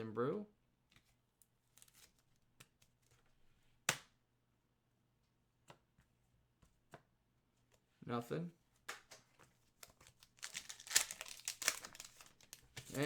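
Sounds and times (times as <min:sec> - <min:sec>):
trading cards clicking and rustling: 0:08.9 - 0:13.0
card snapping: 0:10.4 - 0:13.0.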